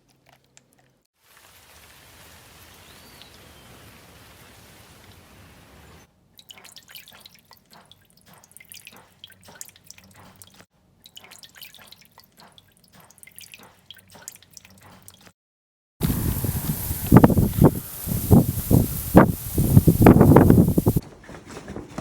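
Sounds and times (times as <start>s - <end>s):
water dripping: 6.4s - 10.1s, 16.0s - 21.0s
loud rustling: 16.0s - 21.0s
steady hiss: 16.0s - 21.0s.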